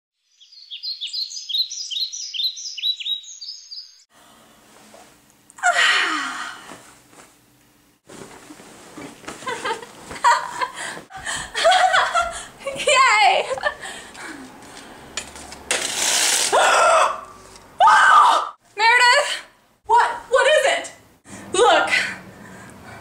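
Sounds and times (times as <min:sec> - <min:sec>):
bird chirping: 0:00.2 - 0:04.1.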